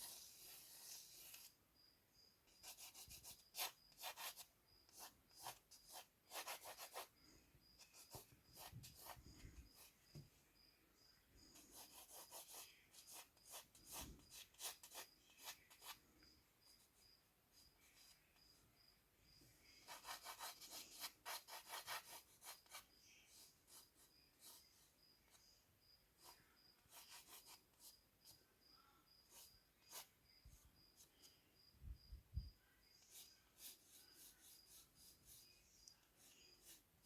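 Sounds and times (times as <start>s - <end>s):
pencil scratching on paper: 0.0s - 1.6s, 2.5s - 7.1s, 7.8s - 10.0s, 11.5s - 16.0s, 19.8s - 25.4s, 26.2s - 28.4s, 29.2s - 31.1s, 33.0s - 37.0s
cricket chirping: 0.0s - 36.8s.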